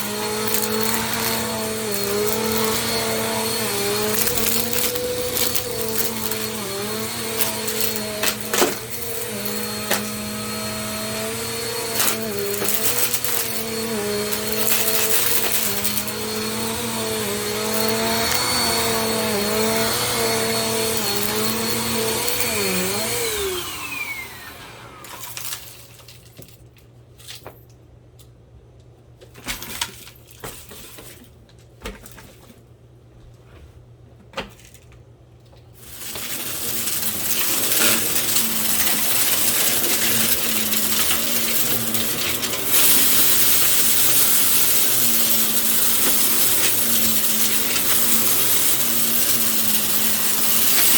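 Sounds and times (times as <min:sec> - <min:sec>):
motor winding down: 0:00.0 - 0:25.1
vacuum cleaner running: 0:00.0 - 0:25.6, 0:35.8 - 0:50.9.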